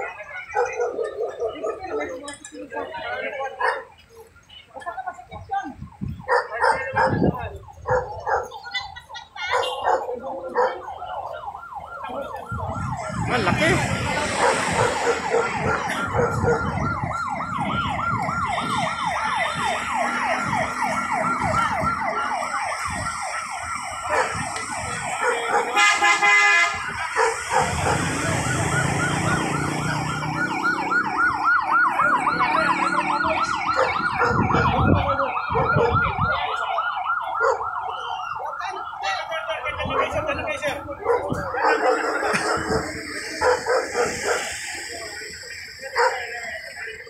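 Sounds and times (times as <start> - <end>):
siren warbling: 5.4 - 47.0
loud horn blast: 25.8 - 27.0.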